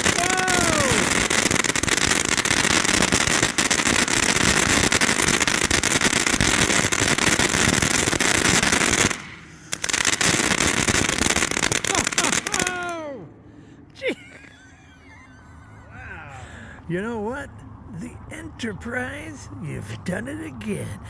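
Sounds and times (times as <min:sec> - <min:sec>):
firework fountain hissing and crackling: 0:00.0 - 0:13.4.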